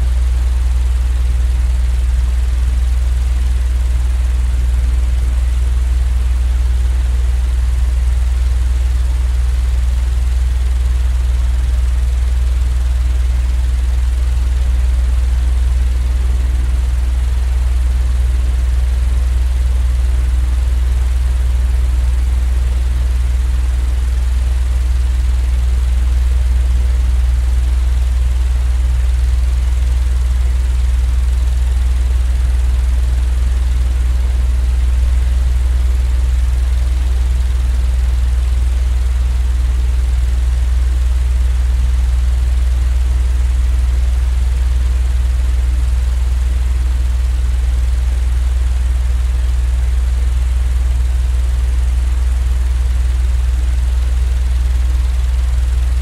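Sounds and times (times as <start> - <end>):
deep rumble noise: 21.7 - 41.5, 55.5 - 56.0.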